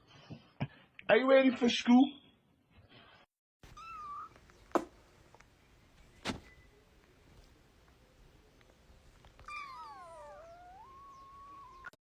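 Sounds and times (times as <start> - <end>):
cat meowing: 3.7 - 4.4, 9.4 - 11.9.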